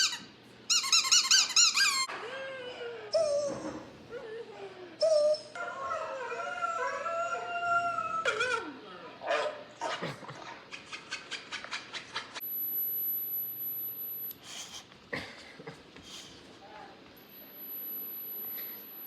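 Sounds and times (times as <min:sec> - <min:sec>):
howl-like call: 0:02.0 - 0:08.8
thin very high steady tone: 0:17.2 - 0:19.0.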